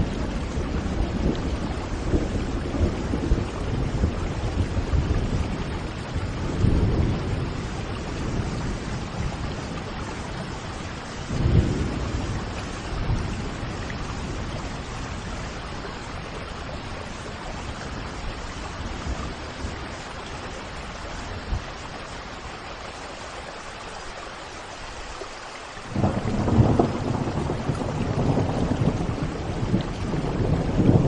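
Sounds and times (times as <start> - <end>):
rushing water: 0.0 - 31.0.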